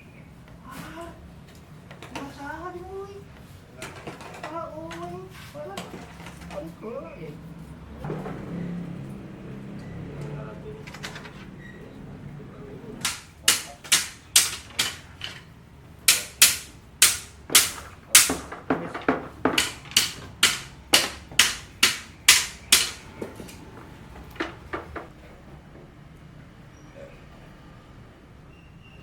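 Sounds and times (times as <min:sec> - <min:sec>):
hammer blows ringing: 0:13.0 - 0:15.4, 0:16.1 - 0:23.9.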